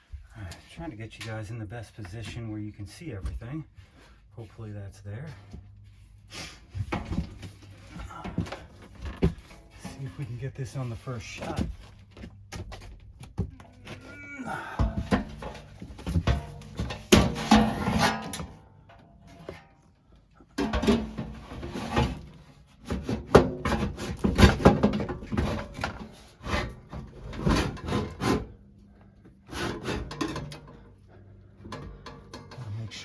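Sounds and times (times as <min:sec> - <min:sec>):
sheet metal knocking and scraping: 0:14.7 - 0:19.8, 0:20.6 - 0:33.0.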